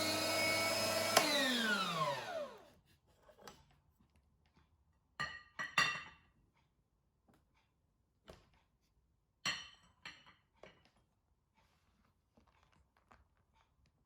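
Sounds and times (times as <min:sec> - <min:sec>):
meat grinder motor running: 0:00.0 - 0:02.7.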